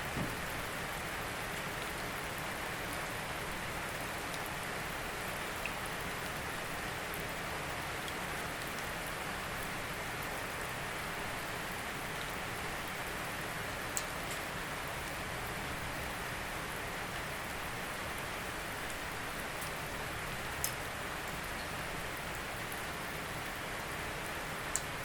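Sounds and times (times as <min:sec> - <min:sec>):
steady rain hiss: 0:00.0 - 0:25.0.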